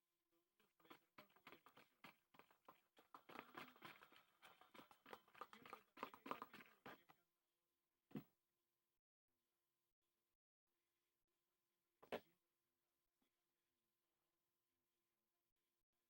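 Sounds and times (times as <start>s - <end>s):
clicks and rustling of containers: 0.6s - 7.1s.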